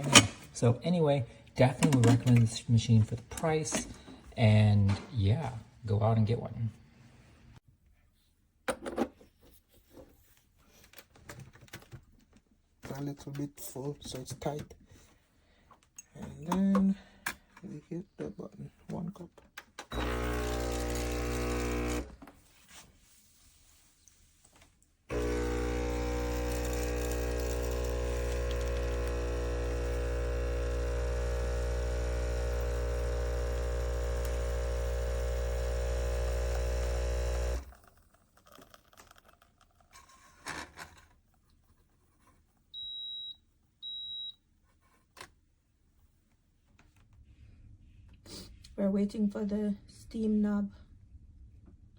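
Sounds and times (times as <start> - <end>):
espresso machine pump buzzing: 19.9 - 22.2, 25.1 - 37.8.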